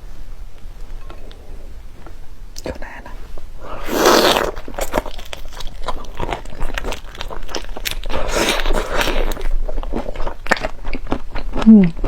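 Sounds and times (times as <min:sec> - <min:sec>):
chewing crunchy food: 0:04.2 - 0:12.0.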